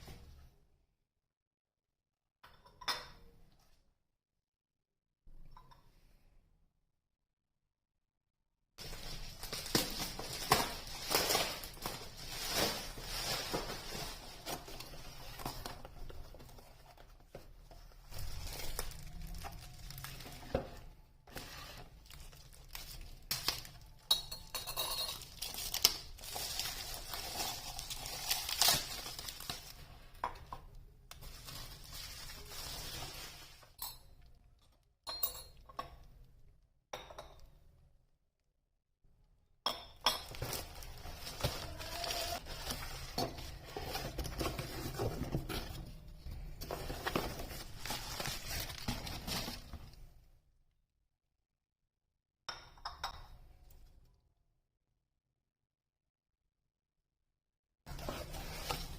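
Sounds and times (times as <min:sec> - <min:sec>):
dishes and utensils clinking: 0:24.0 - 0:25.4.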